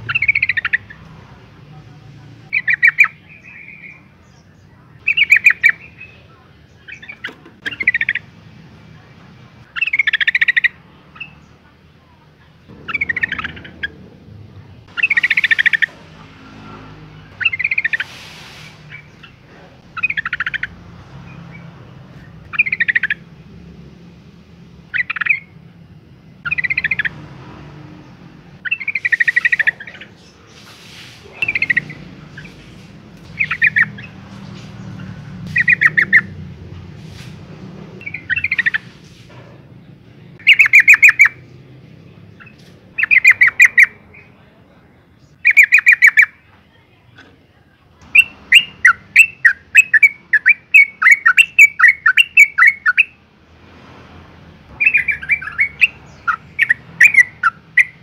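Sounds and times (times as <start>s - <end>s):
bird calling in chattering phrases: 0.0s - 24.1s, 24.8s - 37.3s, 38.0s - 53.2s, 54.7s - 58.0s.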